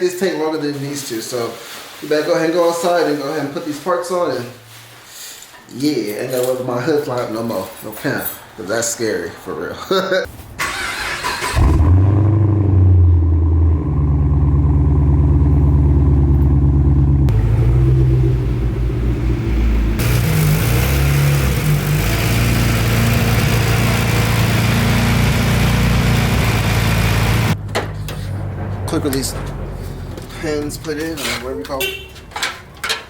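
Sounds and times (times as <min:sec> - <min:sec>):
car engine running: 0:12.3 - 0:30.3.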